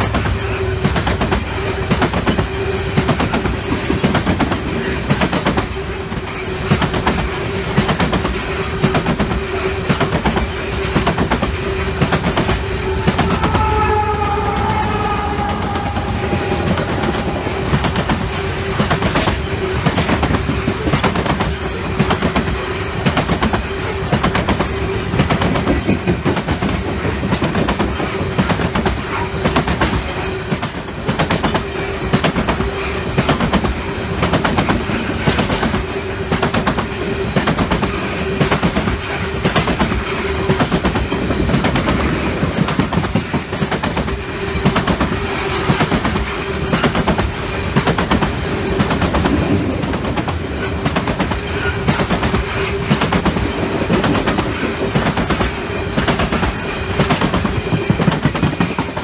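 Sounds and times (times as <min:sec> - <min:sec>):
train wheels clacking over rail joints: 0:00.0 - 0:59.0
steady tone: 0:12.2 - 0:19.5.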